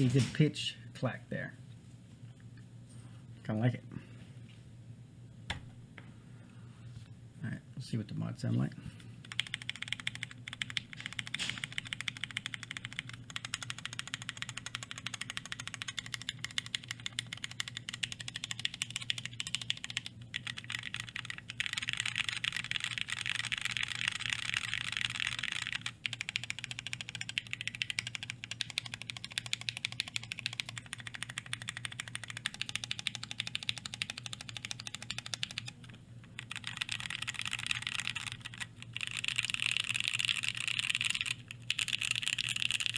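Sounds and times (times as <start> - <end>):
mechanical keyboard typing: 9.2 - 42.9.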